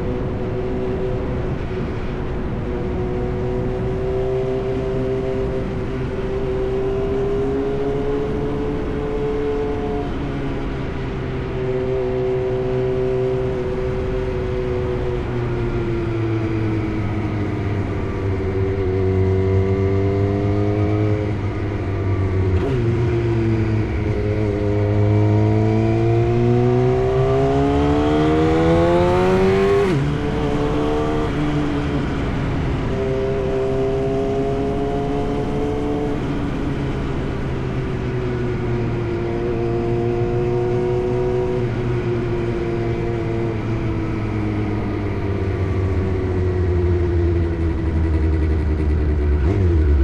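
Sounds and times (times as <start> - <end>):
motorcycle engine revving: 0.0 - 50.0.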